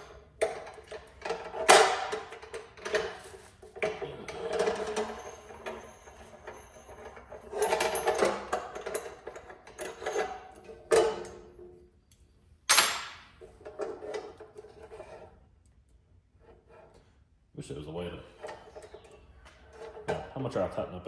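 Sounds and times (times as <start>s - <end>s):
metal tools clattering: 0.0s - 11.7s, 12.7s - 15.0s, 18.3s - 20.6s.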